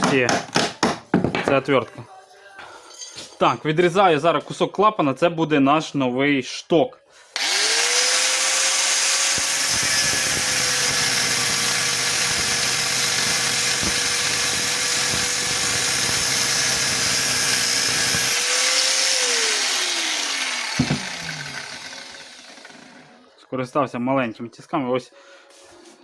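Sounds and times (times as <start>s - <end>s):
angle grinder cutting metal: 7.4s - 23.2s.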